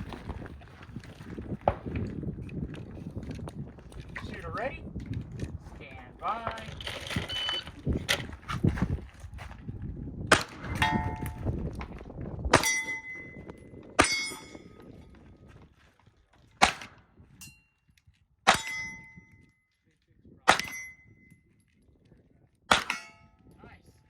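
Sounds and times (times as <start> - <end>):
pistol shots: 10.3 - 11.3, 16.6 - 17.0, 20.5 - 20.9, 22.7 - 23.2
steel plate clanging: 10.6 - 11.4, 12.6 - 13.4, 14.0 - 14.8, 18.5 - 19.2, 20.5 - 21.0, 22.7 - 23.4.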